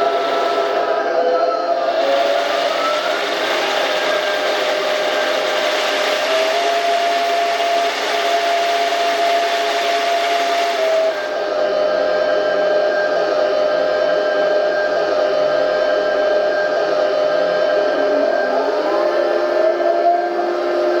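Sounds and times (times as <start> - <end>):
turbine engine sound from small speaker: 0.0 - 21.0.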